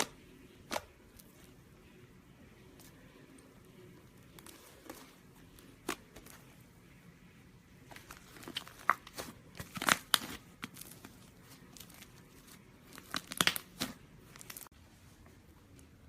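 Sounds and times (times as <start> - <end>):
slime crackling and popping: 8.4 - 14.7.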